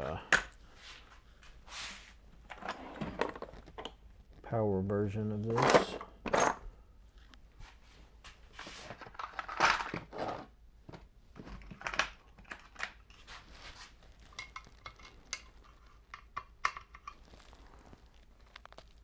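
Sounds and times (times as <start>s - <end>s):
metal tools clinking: 5.4s - 6.7s
rustling: 13.2s - 16.1s, 16.9s - 19.0s.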